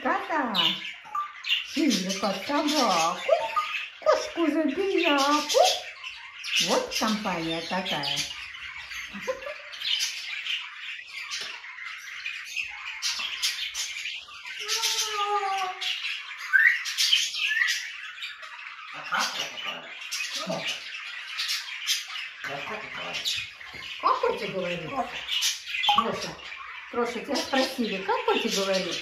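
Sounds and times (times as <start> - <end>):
budgerigars chattering: 0.0 - 29.0
parrot whistles and squawks: 3.0 - 4.4, 14.5 - 20.6.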